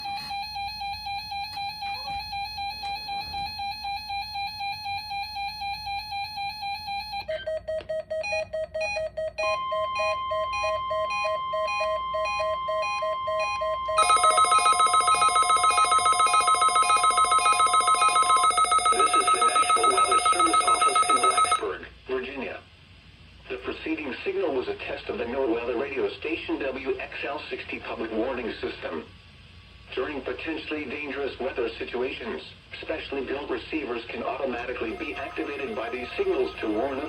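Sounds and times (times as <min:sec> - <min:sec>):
different beeping pattern: 0:00.0 - 0:21.6, 0:34.8 - 0:37.0
loud pulsing alarm: 0:00.0 - 0:21.7, 0:34.8 - 0:37.0
steady warning alarm tone: 0:00.0 - 0:21.7, 0:34.7 - 0:37.0
pulsing electronic beep: 0:34.9 - 0:37.0.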